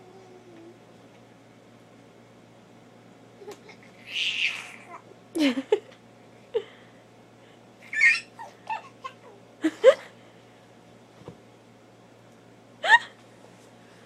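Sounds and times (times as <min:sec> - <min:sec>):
baby squeaking and grunting: 0:03.7 - 0:05.0, 0:07.8 - 0:09.2.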